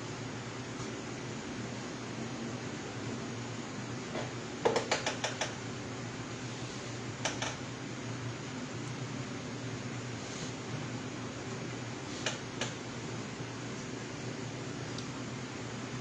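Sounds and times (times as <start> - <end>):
room fan humming: 0.0 - 16.0
sharp clicks: 4.8 - 5.6, 7.2 - 7.6.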